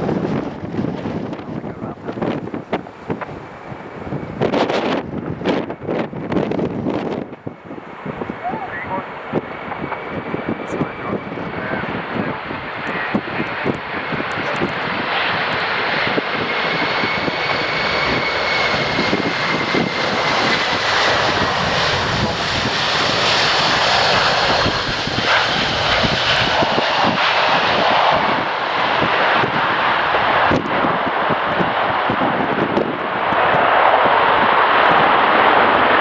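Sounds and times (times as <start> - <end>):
jet engines running: 0.0 - 36.0.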